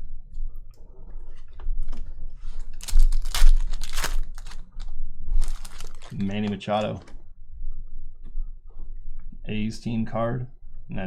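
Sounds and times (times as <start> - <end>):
card packaging crinkling and rustling: 1.9 - 7.2.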